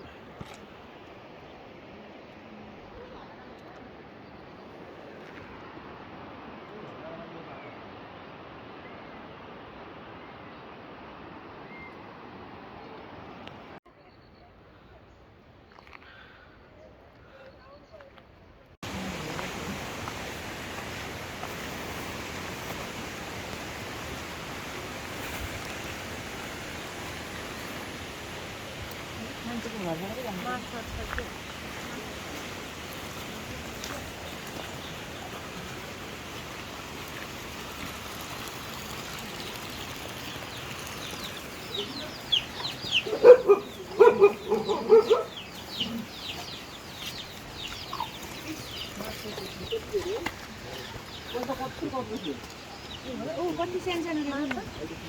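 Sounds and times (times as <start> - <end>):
steady background hiss: 18.8 - 37.8
waterfall rushing: 18.8 - 55.0
chickens clucking: 41.3 - 53.6.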